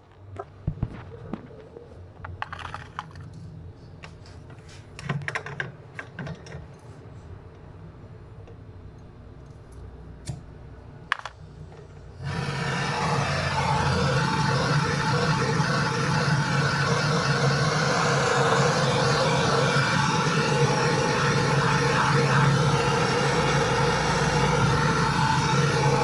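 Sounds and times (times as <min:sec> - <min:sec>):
loud rushing noise: 0:12.2 - 0:26.0.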